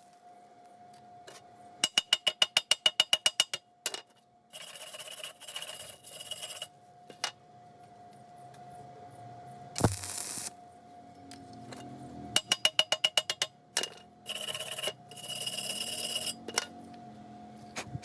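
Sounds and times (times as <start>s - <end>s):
scraping on metal: 4.5s - 6.7s, 13.2s - 16.7s.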